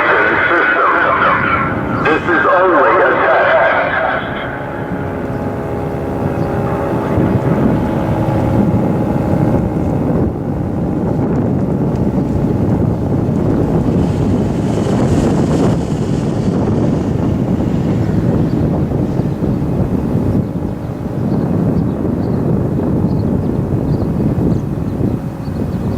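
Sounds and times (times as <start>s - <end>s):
low rushing noise: 0.0s - 11.4s.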